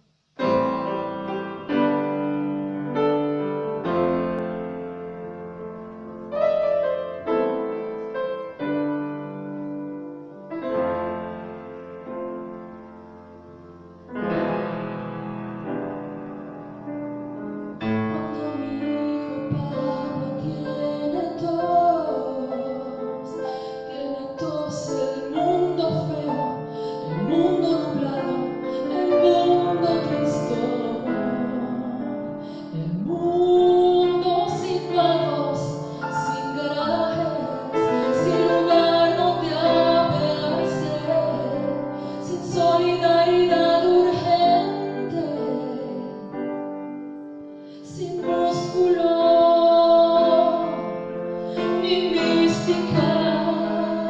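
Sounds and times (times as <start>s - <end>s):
piano accompaniment: 0.0s - 54.0s
woman singing: 18.1s - 46.4s, 47.8s - 50.8s, 51.4s - 54.0s.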